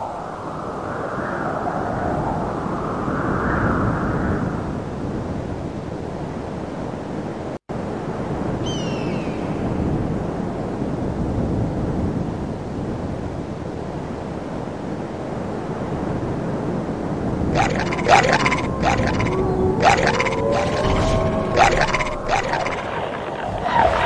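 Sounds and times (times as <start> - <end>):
wind rumbling: 16.6 - 24.0.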